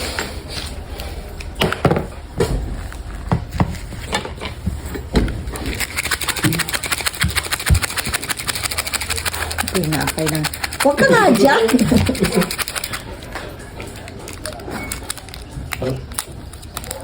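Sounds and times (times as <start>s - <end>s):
wrapper crinkling: 5.6s - 17.0s
fast even ticks: 5.8s - 13.0s.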